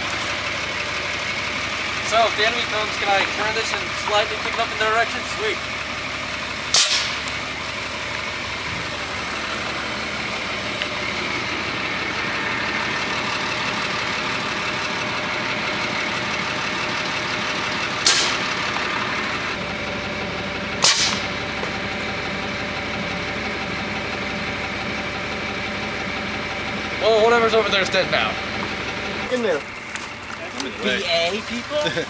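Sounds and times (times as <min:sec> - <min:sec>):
truck diesel engine running: 0:00.0 - 0:32.0
compressed air blasts: 0:06.7 - 0:07.3, 0:18.0 - 0:18.7, 0:20.8 - 0:21.4.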